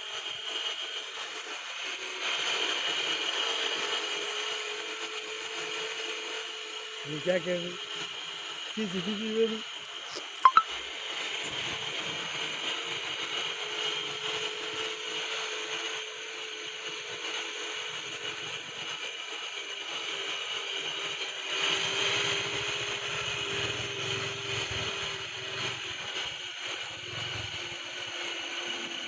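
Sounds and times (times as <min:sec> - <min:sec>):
sharpening wheel grinding: 0:20.8 - 0:29.0.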